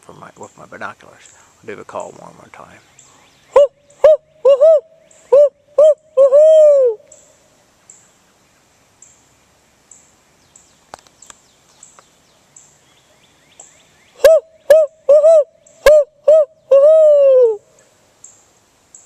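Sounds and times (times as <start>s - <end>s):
owl call hoots: 3.5s - 7.3s, 14.1s - 17.9s
faint clicks: 10.9s - 12.1s.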